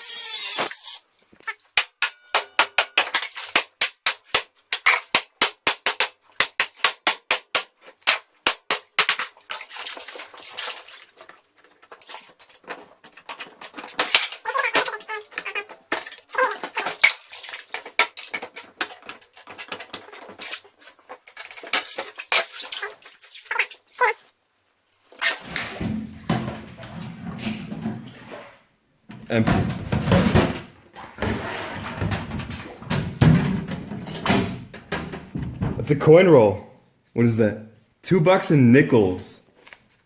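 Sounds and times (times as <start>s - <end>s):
sharp metallic bangs: 1.8s - 3.8s.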